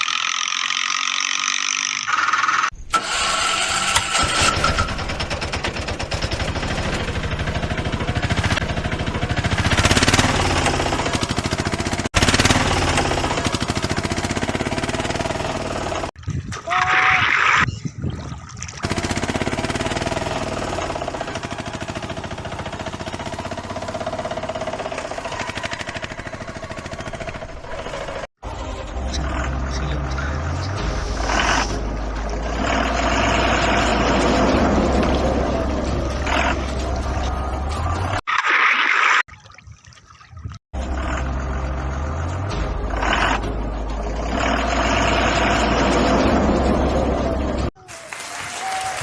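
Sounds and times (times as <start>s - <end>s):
toy motor and gears rattling: 0.0s - 2.8s.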